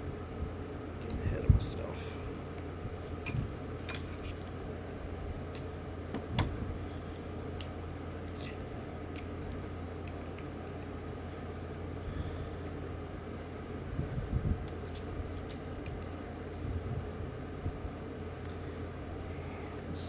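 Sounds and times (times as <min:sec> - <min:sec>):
steady low hum: 0:00.0 - 0:20.0
metal reel parts clicking: 0:07.6 - 0:09.4, 0:14.7 - 0:16.2.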